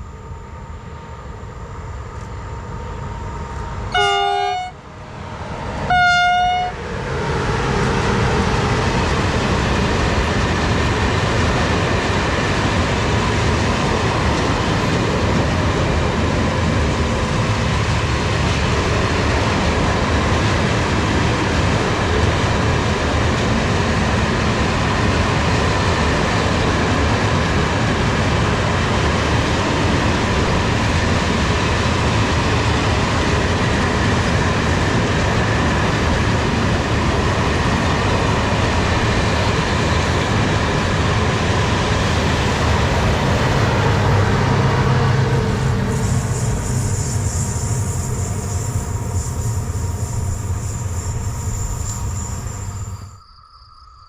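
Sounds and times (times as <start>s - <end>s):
train wheels rumbling: 2.1s - 53.1s.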